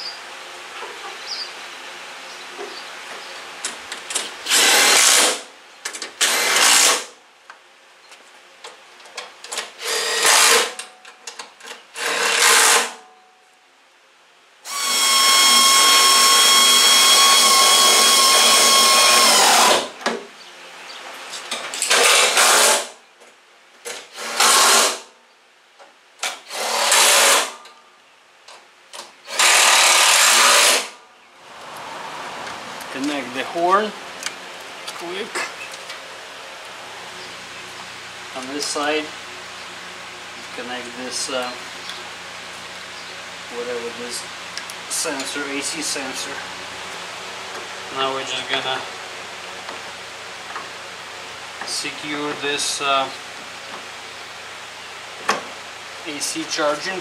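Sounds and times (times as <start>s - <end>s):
cordless power tool whining: 4.4s - 5.4s, 9.8s - 10.8s, 14.7s - 20.0s, 29.2s - 30.9s.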